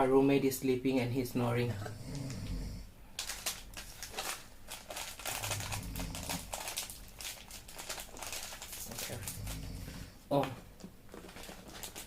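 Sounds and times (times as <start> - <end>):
man snoring: 1.6 - 2.9, 5.4 - 6.5, 9.0 - 10.2.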